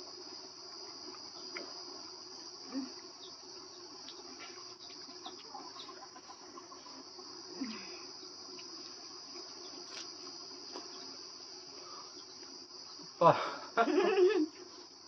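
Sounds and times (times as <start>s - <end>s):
crickets chirring: 0.0s - 15.0s
faint ticks: 8.4s - 11.0s.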